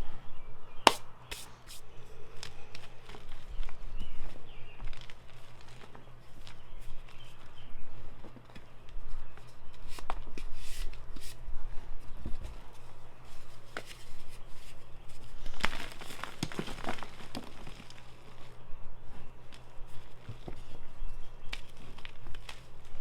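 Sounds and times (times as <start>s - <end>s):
chalk blocks being crushed: 0.9s - 1.8s.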